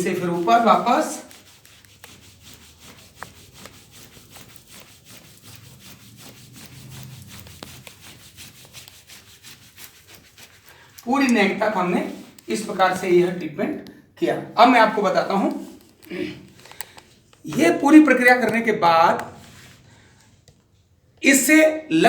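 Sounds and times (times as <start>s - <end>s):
hands rubbing a back: 0.0s - 13.3s, 19.2s - 19.8s.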